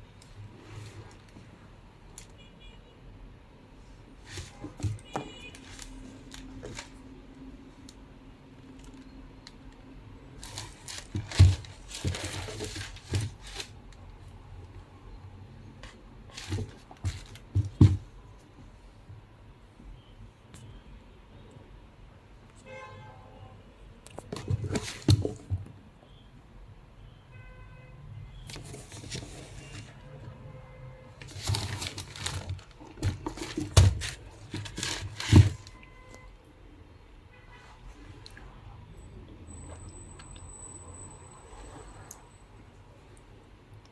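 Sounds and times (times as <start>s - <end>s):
handling rustles: 4.1s - 7.0s, 10.4s - 13.8s, 15.8s - 18.1s, 24.2s - 25.7s, 28.4s - 30.1s, 31.2s - 35.8s
packaging rustling: 10.4s - 13.8s, 31.2s - 35.8s.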